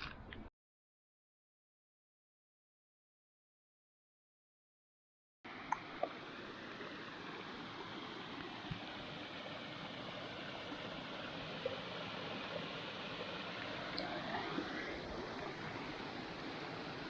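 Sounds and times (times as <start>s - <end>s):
stream water rushing: 5.5s - 17.0s.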